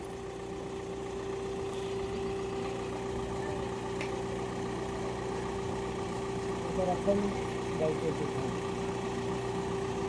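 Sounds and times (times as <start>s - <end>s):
engine idling: 0.0s - 10.0s.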